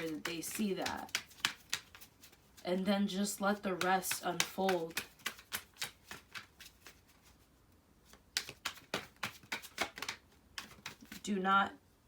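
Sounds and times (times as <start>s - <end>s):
cards being handled clicking: 0.0s - 2.5s, 3.8s - 7.2s, 8.1s - 11.2s.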